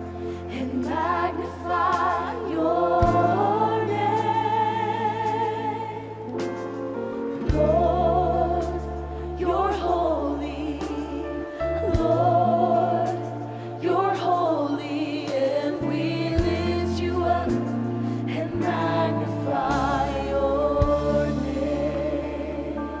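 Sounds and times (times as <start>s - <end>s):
gospel ensemble singing: 0.0s - 23.0s
held bass notes: 7.4s - 23.0s.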